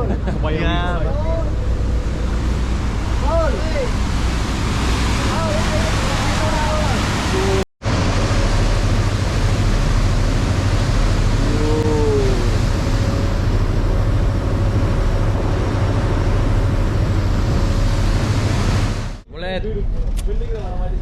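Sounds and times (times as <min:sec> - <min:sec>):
loud rushing noise: 0:01.6 - 0:19.2
person calling: 0:11.5 - 0:13.5.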